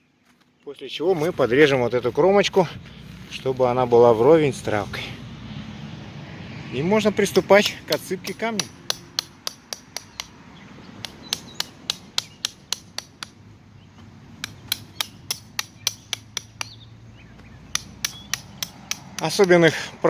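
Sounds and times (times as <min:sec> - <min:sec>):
hammer striking nails: 0:07.9 - 0:10.4, 0:11.0 - 0:13.4, 0:14.4 - 0:16.7, 0:17.7 - 0:19.6.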